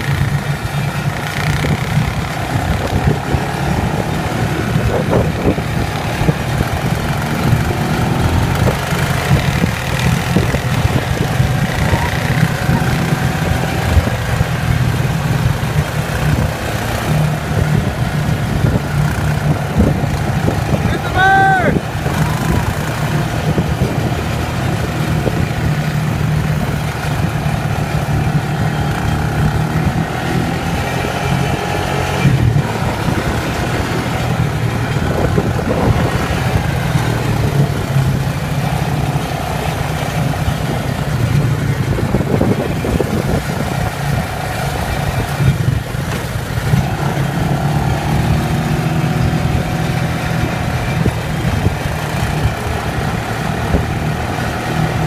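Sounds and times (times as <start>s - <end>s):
quad bike engine running: 0.0s - 55.0s.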